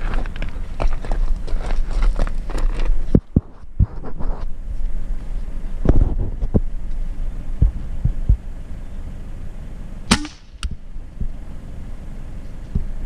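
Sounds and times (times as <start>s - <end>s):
thumps and rumble on microphone: 0.0s - 8.5s, 12.7s - 13.0s
air rifle firing: 10.1s - 10.8s.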